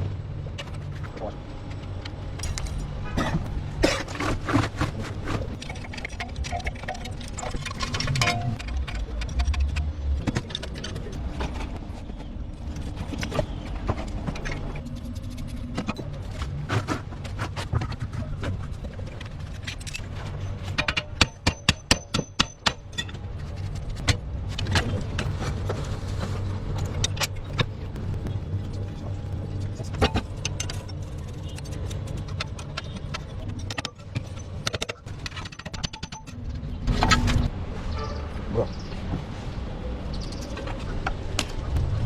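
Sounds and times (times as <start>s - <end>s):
sharp metallic clicks and knocks: 4.1s - 11.9s, 12.6s - 25.4s, 26.7s - 37.5s.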